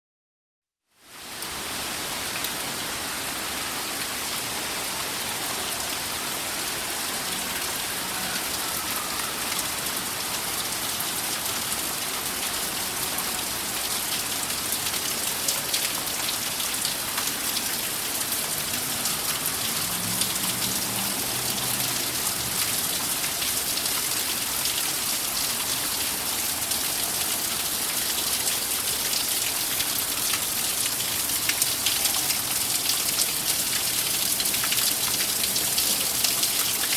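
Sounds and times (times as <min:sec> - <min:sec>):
steady rain hiss: 0:00.9 - 0:36.9
raindrop patter: 0:09.5 - 0:36.9.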